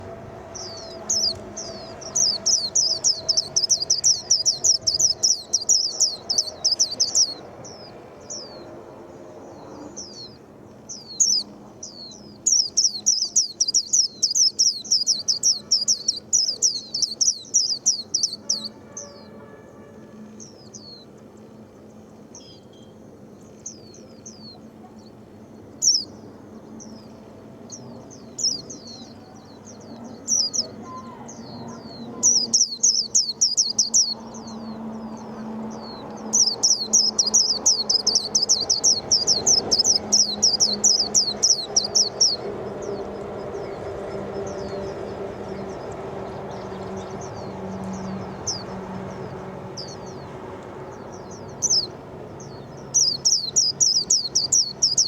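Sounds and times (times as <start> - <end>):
rapid chattering birdsong: 0.0 - 8.7, 9.6 - 19.3, 27.7 - 55.0
bird singing: 0.0 - 21.6, 22.3 - 55.0.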